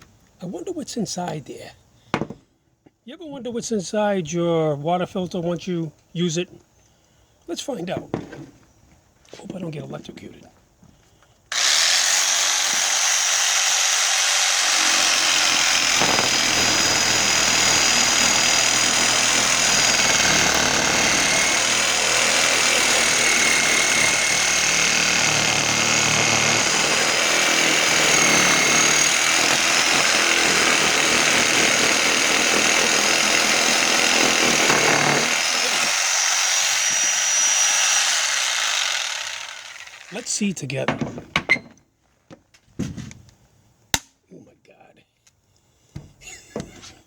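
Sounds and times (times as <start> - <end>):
power tool whining: 11.5 - 40.4.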